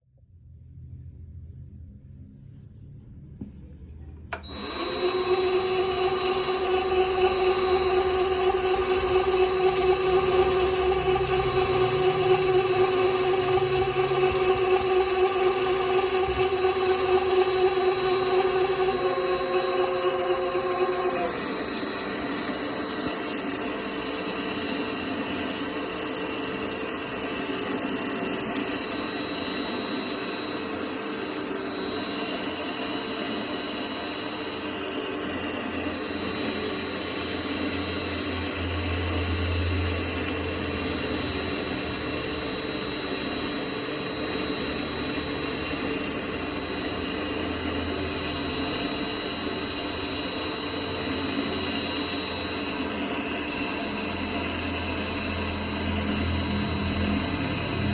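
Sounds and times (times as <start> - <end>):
low hum: 0.0 - 22.7
lathe whining: 4.3 - 57.9.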